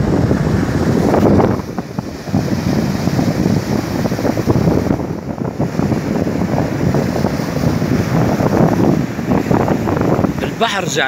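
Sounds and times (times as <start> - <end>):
surf breaking on shore: 0.0 - 11.0
wind buffeting microphone: 0.0 - 11.0.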